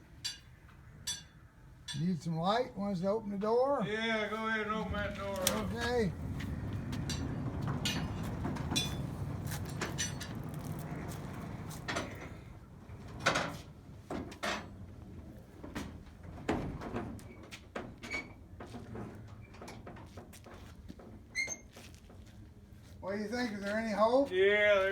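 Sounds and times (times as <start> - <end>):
large door sliding with rumbling scrape: 4.5 - 21.6
knocks and clatters: 5.0 - 14.8.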